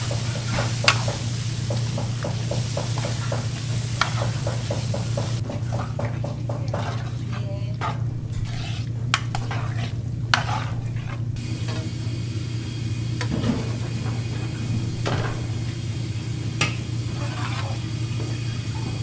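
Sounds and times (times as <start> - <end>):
dishes and cutlery clinking: 0.0 - 11.2
steady low hum: 0.0 - 18.9.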